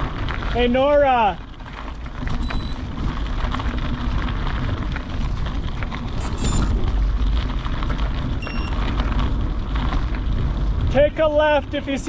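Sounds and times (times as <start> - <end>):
wind rumbling on microphone: 0.0 - 12.0
faint crunches and ticks: 1.4 - 11.0.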